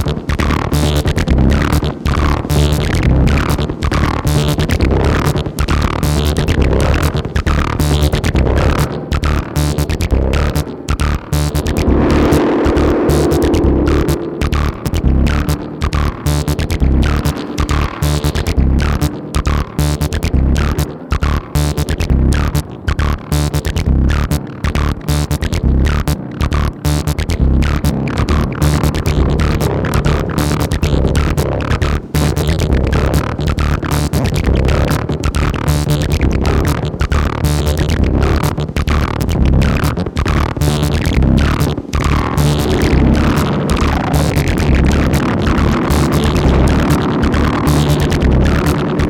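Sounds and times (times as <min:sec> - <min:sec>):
acid synth bassline with echo: 0:00.0 - 0:49.0.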